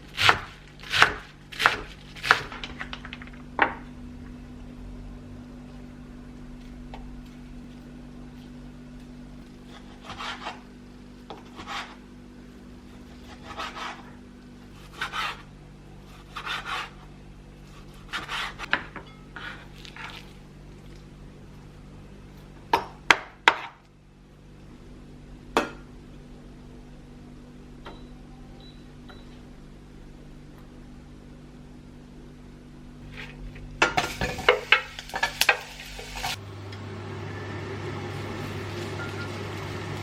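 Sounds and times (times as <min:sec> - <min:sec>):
steady low hum: 0:00.0 - 0:40.0
kitchen utensil scraping: 0:09.6 - 0:10.7, 0:11.3 - 0:12.0, 0:18.0 - 0:20.3, 0:33.0 - 0:36.4.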